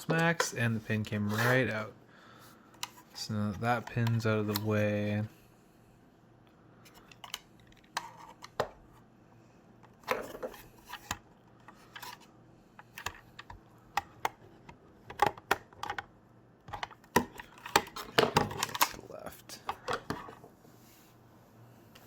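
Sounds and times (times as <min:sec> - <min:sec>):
plastic parts clicking and scraping: 0:02.7 - 0:04.8, 0:06.8 - 0:08.8, 0:09.8 - 0:16.1, 0:16.7 - 0:19.0, 0:19.6 - 0:20.5.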